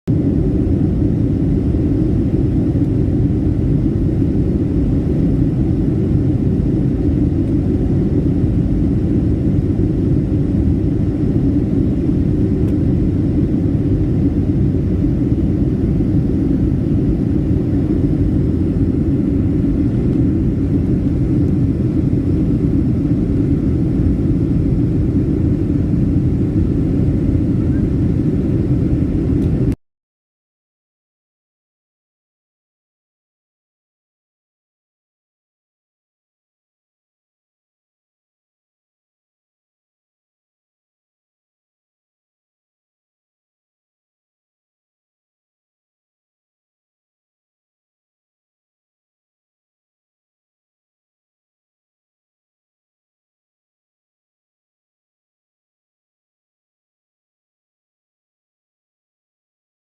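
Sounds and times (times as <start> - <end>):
jet airliner cabin rumble: 0.1 - 29.8.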